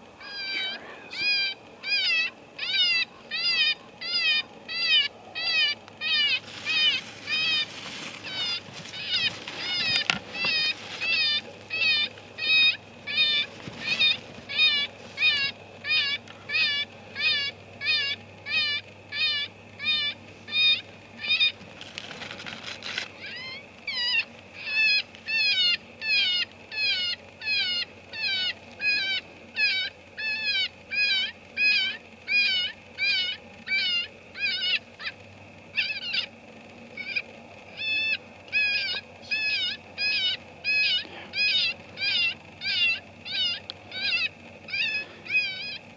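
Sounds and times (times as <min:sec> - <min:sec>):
electronic predator caller squealing: 0:37.8 - 0:45.8.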